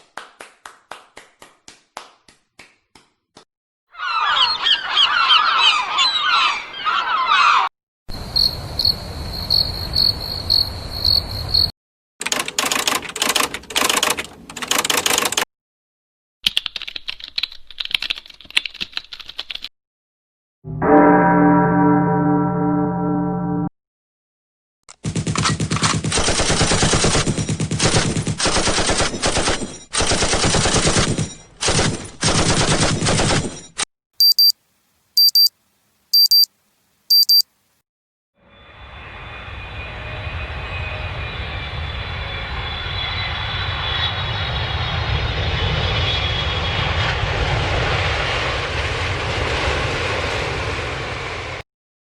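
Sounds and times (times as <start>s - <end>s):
high whine: 20.7s - 23.7s
alarm clock beeping: 34.2s - 34.5s, 35.2s - 35.5s, 36.2s - 36.5s, 37.1s - 37.4s
airplane engine noise: 38.6s - 51.6s.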